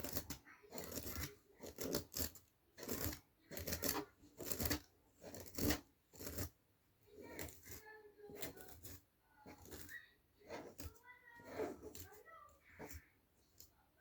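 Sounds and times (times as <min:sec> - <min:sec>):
comb pulled through doll hair: 0:00.0 - 0:14.0.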